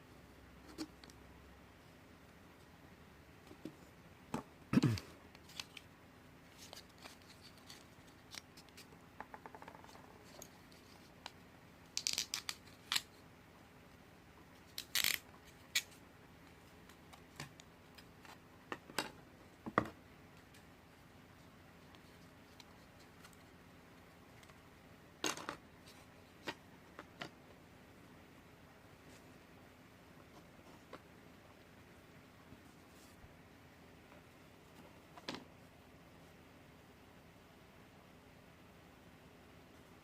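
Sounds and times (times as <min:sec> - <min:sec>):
small clicks snaps and scrapes: 0:05.4 - 0:05.9, 0:06.5 - 0:08.9, 0:09.6 - 0:13.2, 0:14.7 - 0:16.0.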